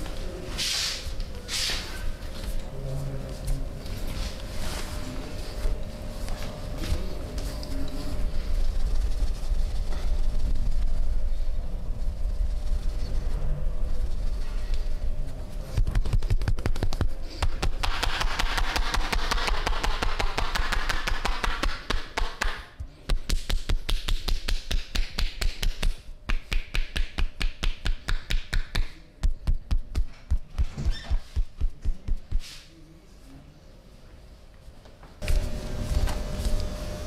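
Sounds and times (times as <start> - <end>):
hands slapping on body: 15.8 - 32.4.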